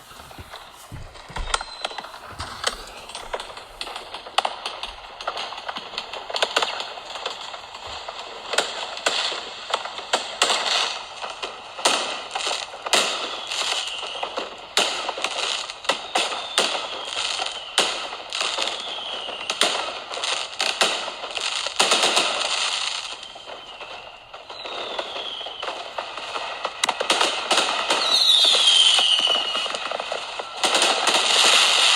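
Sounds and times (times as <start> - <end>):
falling whistles: 0.0 - 4.3, 22.9 - 26.5, 27.8 - 31.9
fireworks bangs and crackling: 0.0 - 31.9.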